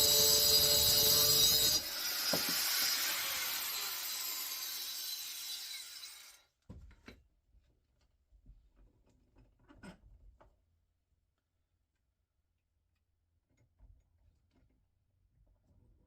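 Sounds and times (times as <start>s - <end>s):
angle grinder cutting steel: 0.0s - 6.4s.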